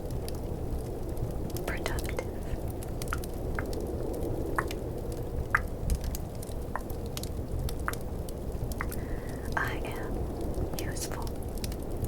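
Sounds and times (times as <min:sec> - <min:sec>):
fireplace crackle: 0:00.0 - 0:12.0
snowstorm wind rushing: 0:00.0 - 0:12.0
wet tongue clicks: 0:08.8 - 0:09.0.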